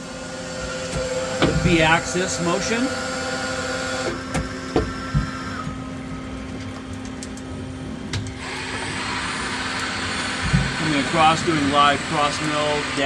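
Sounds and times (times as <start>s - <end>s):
lathe motor whine: 0.0s - 6.4s, 8.3s - 13.0s.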